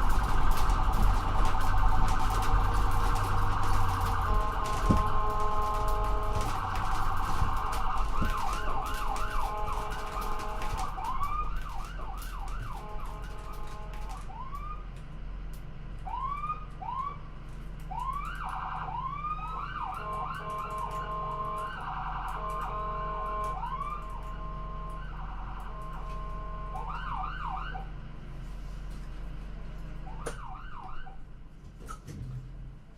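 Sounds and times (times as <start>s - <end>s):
ambulance siren: 0.0s - 14.9s, 16.0s - 28.0s, 30.0s - 31.2s
steady electronic horn tone: 3.9s - 11.8s, 12.6s - 14.2s, 19.9s - 27.0s.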